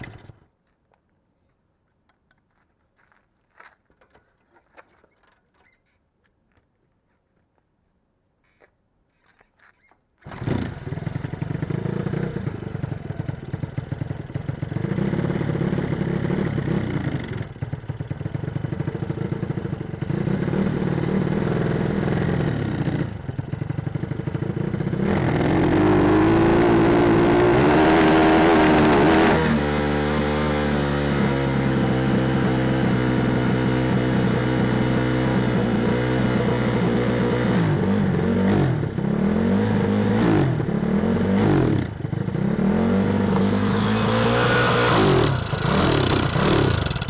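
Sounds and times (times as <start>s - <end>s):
motorcycle engine running unevenly: 10.3s - 26.1s, 40.6s - 47.0s.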